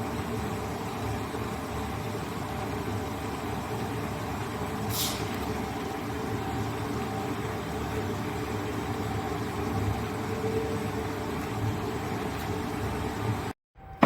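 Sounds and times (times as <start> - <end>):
brief high hiss: 4.9 - 5.3.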